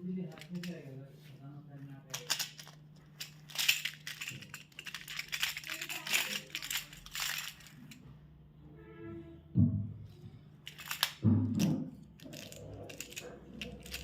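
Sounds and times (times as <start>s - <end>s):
candy packaging crackling: 0.3s - 0.8s, 2.1s - 8.0s, 10.7s - 11.2s, 12.2s - 14.0s.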